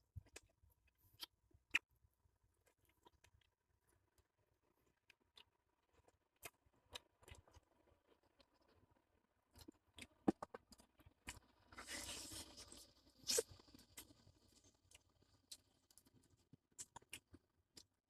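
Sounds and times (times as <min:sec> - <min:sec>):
faint eating sounds: 0:00.0 - 0:18.0.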